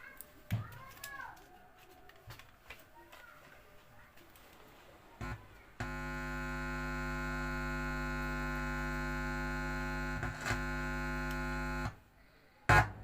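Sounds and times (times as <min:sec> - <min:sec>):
mains hum from speakers: 0:05.1 - 0:13.0.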